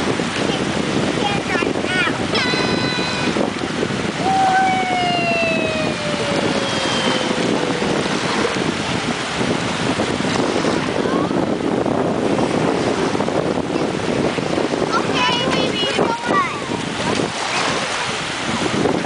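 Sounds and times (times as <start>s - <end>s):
water rushing: 0.0s - 19.0s
wind noise on microphone: 0.0s - 19.0s
high pitched falling tone: 4.2s - 9.0s.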